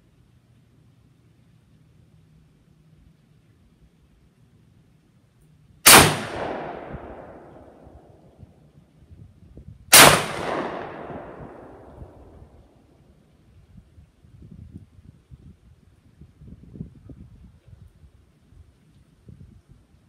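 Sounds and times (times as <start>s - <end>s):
shotgun gunshots echoing: 5.8s - 8.1s, 9.9s - 12.3s.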